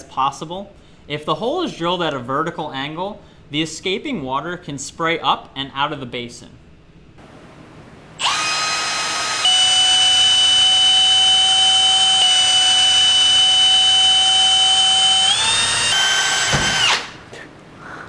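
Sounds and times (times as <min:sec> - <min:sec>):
electric drill whining: 0:08.2 - 0:17.4.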